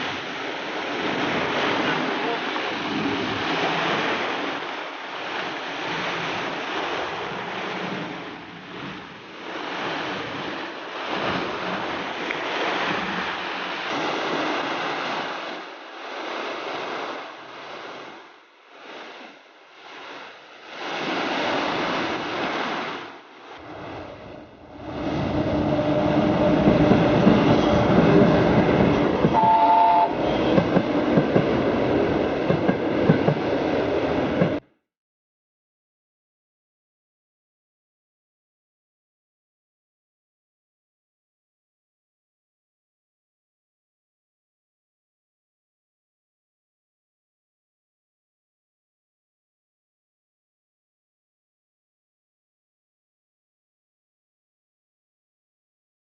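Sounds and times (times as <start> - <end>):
train passing: 23.6 - 34.6
train horn blast: 29.2 - 30.7.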